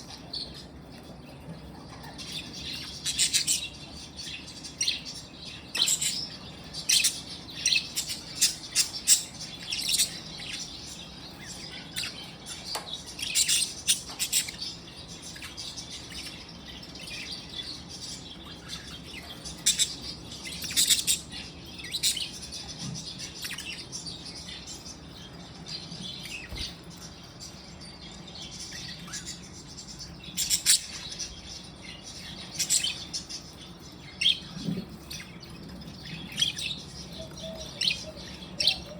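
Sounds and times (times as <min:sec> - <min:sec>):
budgerigars chattering and chirping: 0:00.0 - 0:38.9.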